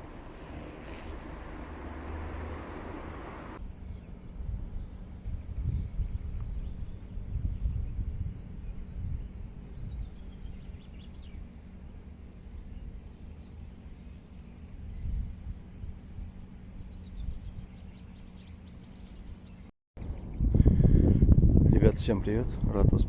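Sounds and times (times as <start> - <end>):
wind buffeting microphone: 0.0 - 11.5, 14.7 - 18.0, 20.0 - 23.0.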